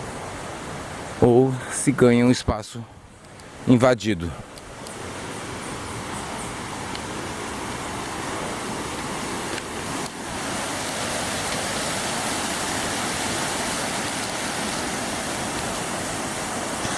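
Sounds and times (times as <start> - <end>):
waterfall rushing: 3.5 - 16.9.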